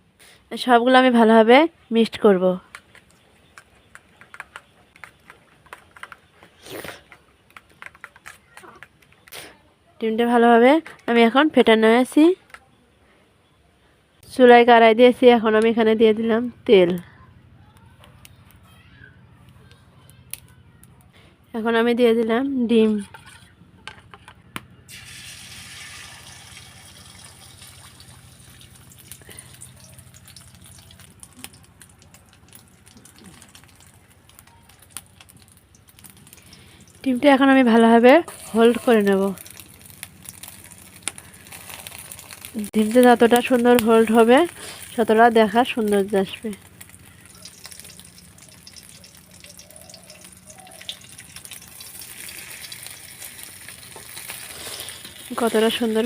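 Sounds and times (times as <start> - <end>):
oil crackling: 2.6 - 9.5, 17.7 - 21.1, 22.9 - 56.0
egg sizzling in hot oil: 24.9 - 56.0.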